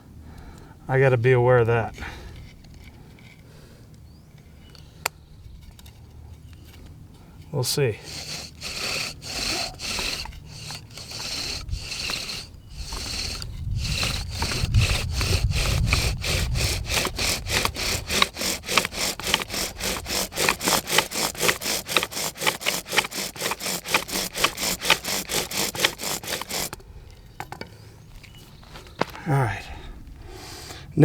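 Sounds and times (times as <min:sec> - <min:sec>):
bow drill spindle grinding: 0:07.6 - 0:26.8.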